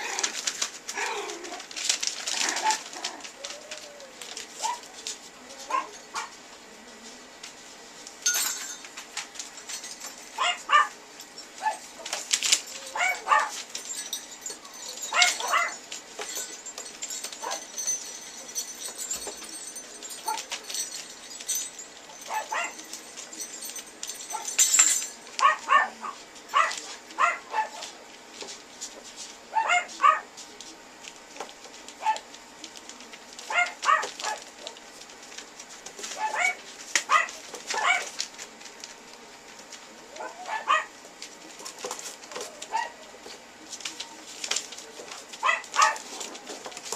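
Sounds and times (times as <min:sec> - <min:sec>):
puppies yipping and barking: 0:02.3 - 0:03.9, 0:09.8 - 0:27.9, 0:29.5 - 0:30.3, 0:45.4 - 0:46.4.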